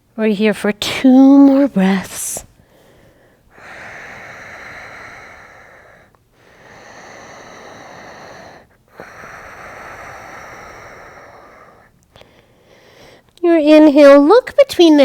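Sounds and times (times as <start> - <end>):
deep breaths: 1.8 - 13.4.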